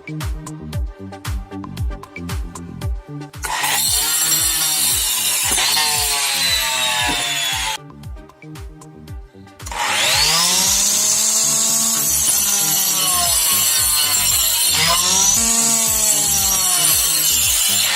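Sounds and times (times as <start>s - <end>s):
circular saw whining cutting wood: 3.4s - 7.8s, 9.6s - 17.9s.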